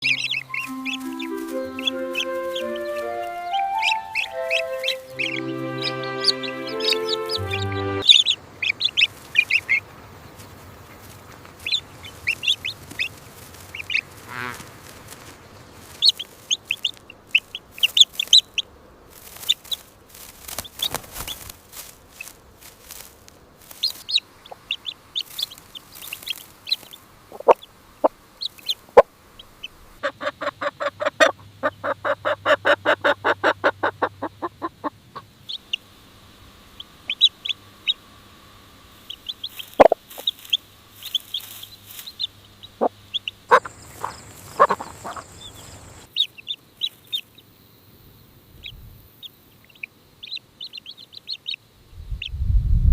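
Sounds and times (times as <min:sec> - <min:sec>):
music: 0:00.0 - 0:08.1
chickens clucking: 0:00.0 - 0:35.9, 0:36.6 - 0:38.1, 0:38.9 - 0:47.4
chicks peeping: 0:00.0 - 0:38.2, 0:38.8 - 0:47.5, 0:48.6 - 0:51.6.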